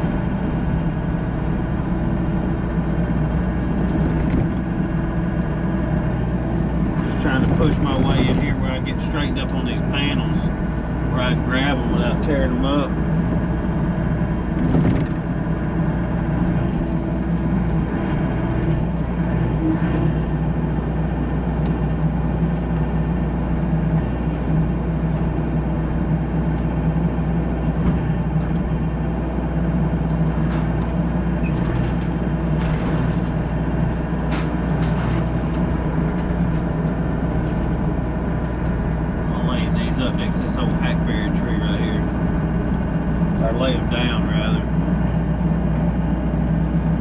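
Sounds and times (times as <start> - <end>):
diesel engine running: 0.0 - 47.0.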